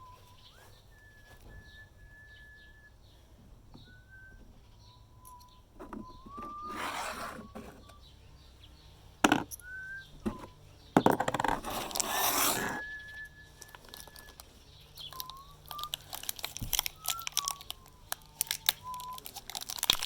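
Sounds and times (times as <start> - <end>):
person whistling: 0.0 - 3.1, 3.8 - 8.0, 9.5 - 10.6, 12.3 - 16.1, 16.8 - 19.4
handling rustle: 5.4 - 8.0, 9.4 - 12.9, 13.6 - 20.0
loud crinkling rustle: 13.6 - 20.0.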